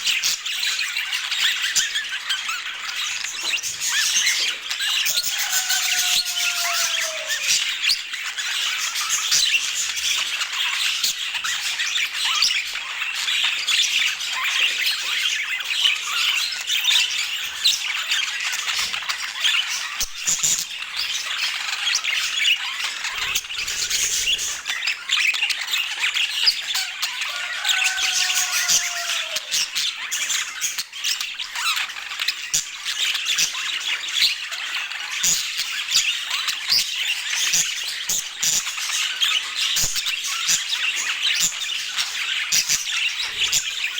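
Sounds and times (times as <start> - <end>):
budgerigars chattering and squawking: 0.0 - 43.9.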